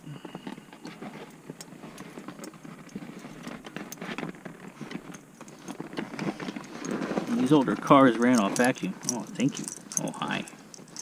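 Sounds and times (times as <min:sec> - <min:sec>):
tools clicking and tapping: 0:06.9 - 0:11.0.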